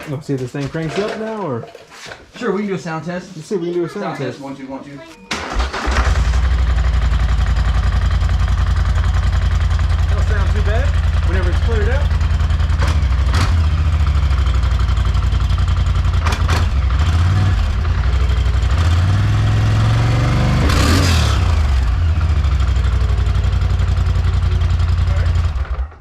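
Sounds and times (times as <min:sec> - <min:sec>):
engine idling and revving: 0:05.4 - 0:26.0.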